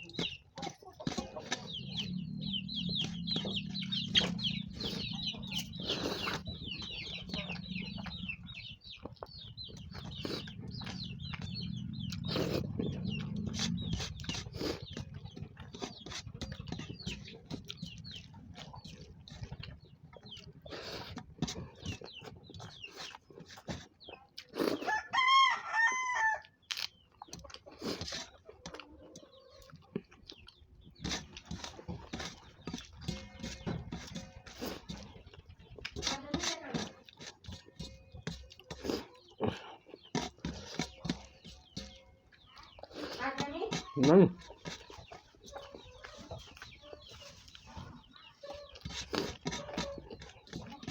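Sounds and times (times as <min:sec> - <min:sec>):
chicks cheeping: 0:00.0 - 0:50.9
person eating by hand: 0:00.0 - 0:50.9
low hum: 0:01.6 - 0:15.1
rooster crowing: 0:24.9 - 0:26.5.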